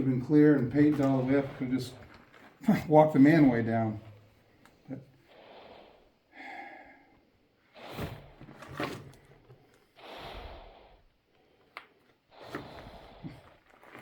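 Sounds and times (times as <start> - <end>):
person breathing heavily: 5.1 - 8.4, 10.0 - 11.7, 12.4 - 13.6.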